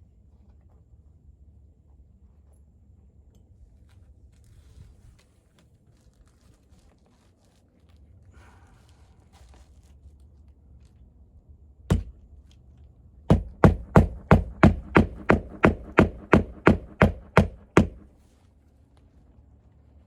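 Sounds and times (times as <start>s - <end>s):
hammer striking nail into shingles: 11.9s - 12.2s, 13.3s - 18.0s.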